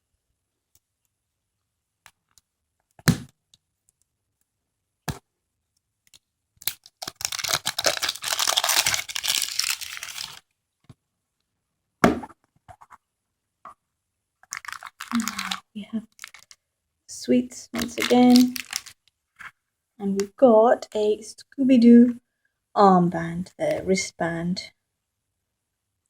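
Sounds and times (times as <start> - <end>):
plastic wrapping crinkling: 6.6 - 10.5, 14.5 - 16.6, 17.7 - 19.0.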